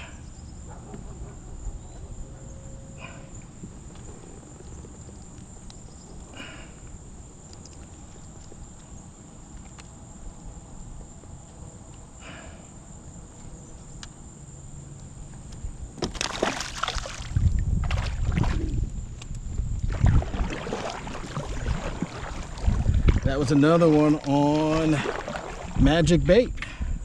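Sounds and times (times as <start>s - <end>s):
faint clicks: 7.4s - 8.9s
water splashing and sloshing: 16.0s - 26.3s.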